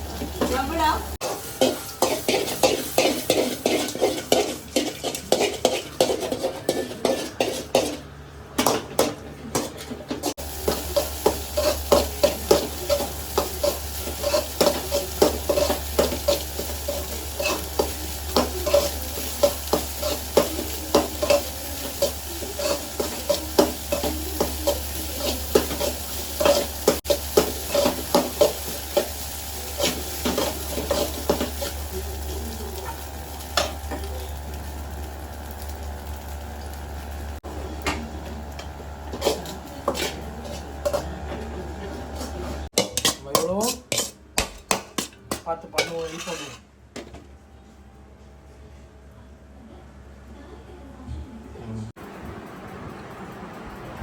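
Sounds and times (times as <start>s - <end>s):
food sizzling: 0.0s - 8.0s, 10.2s - 45.1s
metal spatula scraping pan: 0.4s - 8.1s, 9.6s - 31.8s, 39.1s - 41.1s, 42.2s - 45.2s, 45.8s - 46.6s.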